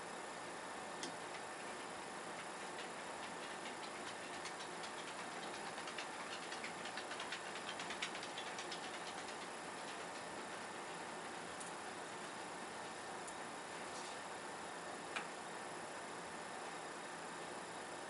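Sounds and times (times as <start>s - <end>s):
small clicks and ticks: 1.0s - 13.4s.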